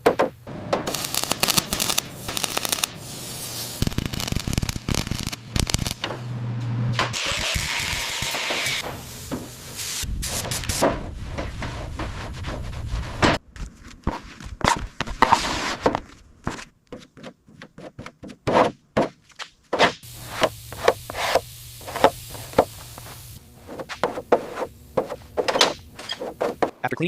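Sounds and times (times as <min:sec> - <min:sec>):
hand tools scraping: 0:19.8 - 0:26.7.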